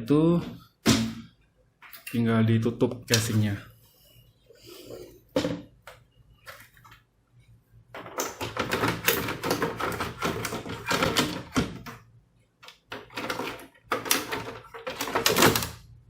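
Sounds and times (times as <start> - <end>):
plastic clattering and scraping: 7.9 - 15.8.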